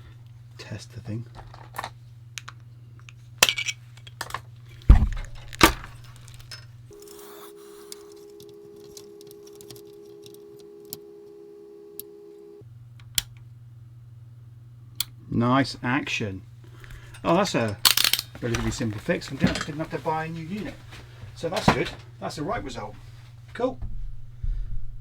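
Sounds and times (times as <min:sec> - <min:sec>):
power switch clicks: 0:13.0 - 0:13.5.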